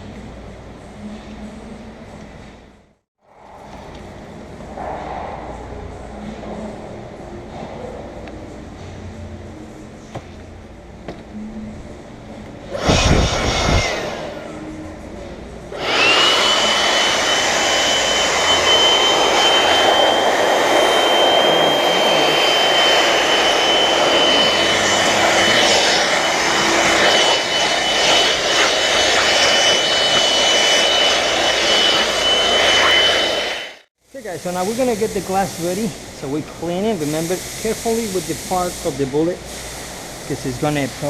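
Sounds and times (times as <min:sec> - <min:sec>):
rush of air: 0:12.7 - 0:14.4, 0:15.8 - 0:33.8
shop vacuum motor whine: 0:12.7 - 0:14.5, 0:15.7 - 0:33.9.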